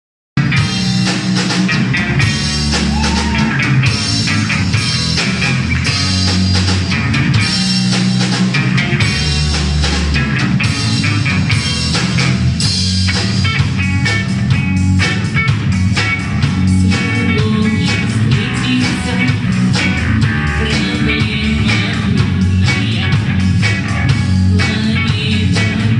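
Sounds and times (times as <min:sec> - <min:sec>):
instrumental rock music: 0:00.4 - 0:25.9.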